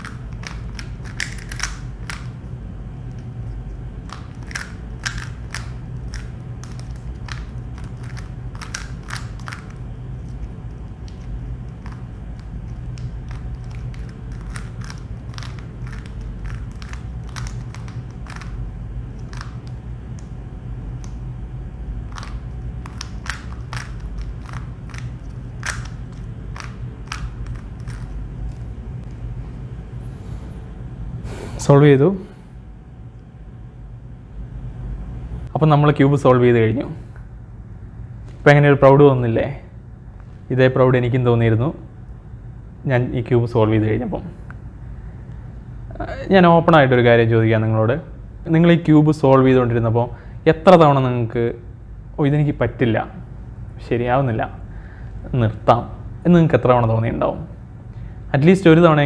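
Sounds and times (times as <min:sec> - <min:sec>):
plastic puzzle cube clicking: 0:00.0 - 0:02.4, 0:04.0 - 0:20.3, 0:22.1 - 0:28.6
steady low hum: 0:00.0 - 0:59.0.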